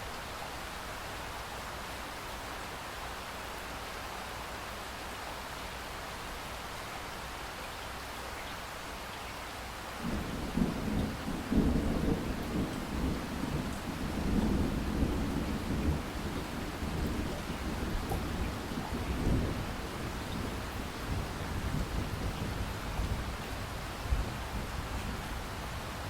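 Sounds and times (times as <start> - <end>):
rain hiss: 0.0 - 26.0
thunder rumble: 10.0 - 26.0.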